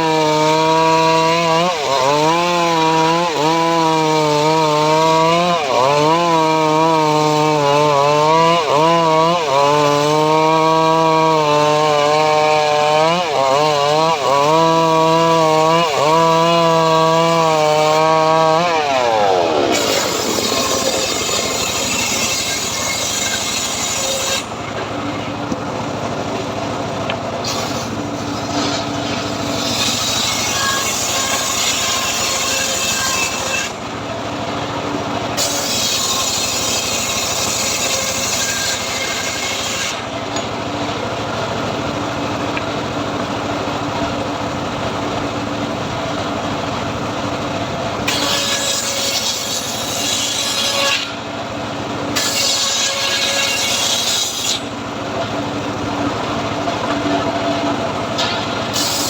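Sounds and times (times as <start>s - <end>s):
saw rasping through log: 0.0s - 25.3s, 27.4s - 33.8s, 35.3s - 40.5s, 48.0s - 51.4s, 52.1s - 55.3s, 55.9s - 59.0s
sawmill hum: 0.0s - 59.0s.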